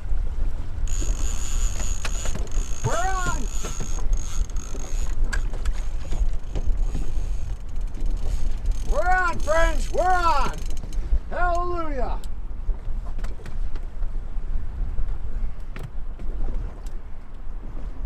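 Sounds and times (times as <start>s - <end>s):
boat engine rumble: 0.0s - 18.0s
fishing reel line whine: 0.8s - 10.0s
person shouting: 2.8s - 3.5s, 8.9s - 10.6s.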